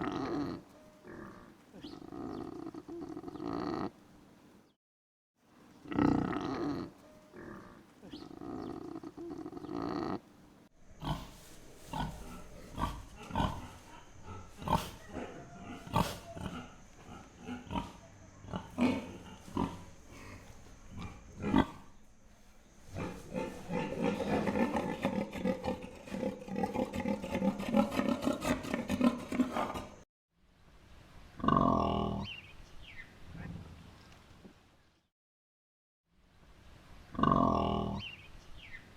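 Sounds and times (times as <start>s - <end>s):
pigs grunting: 0.0s - 4.0s, 5.8s - 10.3s, 10.9s - 22.1s, 22.8s - 30.0s, 31.4s - 32.4s, 37.1s - 38.2s.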